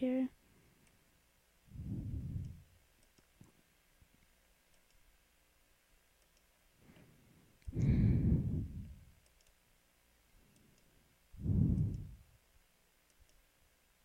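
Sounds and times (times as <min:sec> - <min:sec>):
faint clicking: 0:00.8 - 0:01.1, 0:01.8 - 0:05.1, 0:06.0 - 0:09.6, 0:10.4 - 0:13.5
person exhaling into microphone: 0:07.7 - 0:08.9.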